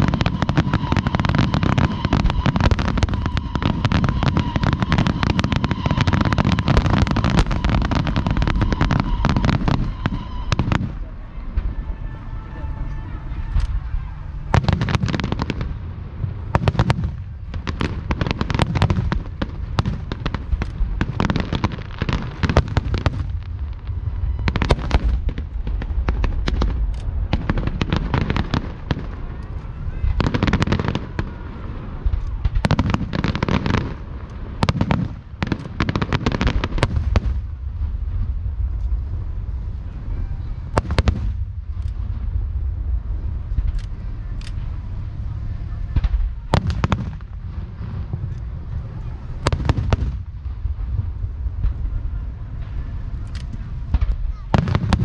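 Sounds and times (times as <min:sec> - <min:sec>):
deep rumble: 0:00.0 - 0:55.0
fireworks bangs and crackling: 0:00.0 - 0:55.0.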